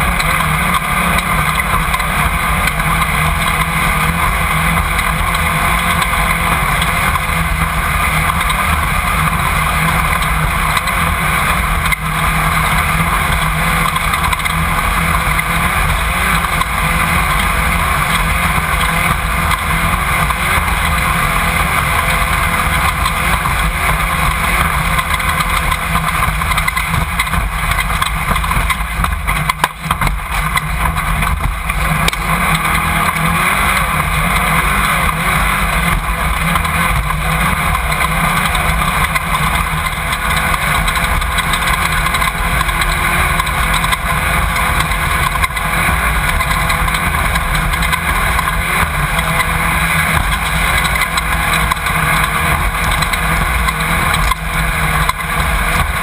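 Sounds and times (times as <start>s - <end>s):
race car engine running hard: 0.0s - 56.0s.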